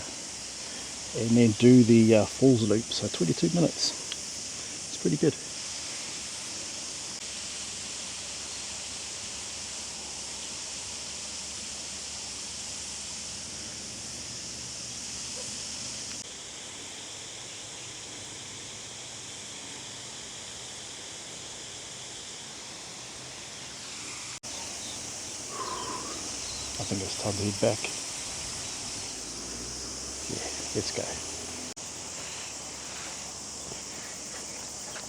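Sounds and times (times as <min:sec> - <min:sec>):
high outdoor hiss: 0:00.0 - 0:35.0.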